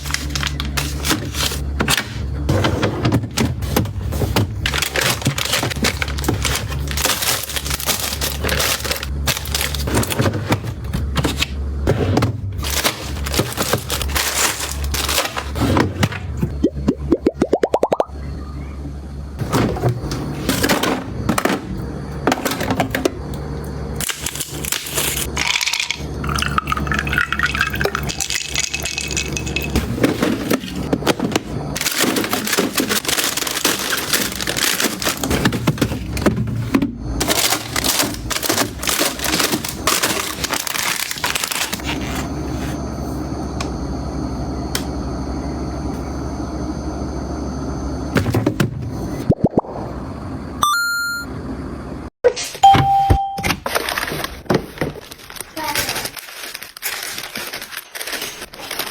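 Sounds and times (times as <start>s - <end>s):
kitchen containers clicking and knocking: 25.3s - 36.7s.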